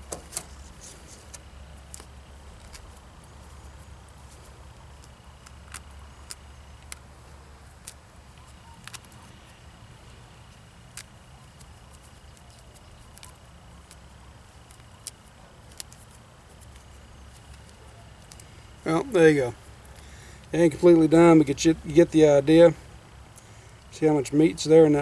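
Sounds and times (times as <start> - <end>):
steady low rumble: 0.0 - 25.0.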